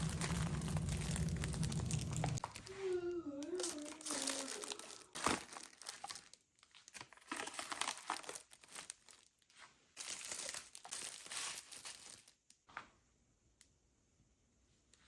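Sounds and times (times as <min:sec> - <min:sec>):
plastic crinkling and rustling: 0:00.0 - 0:12.7.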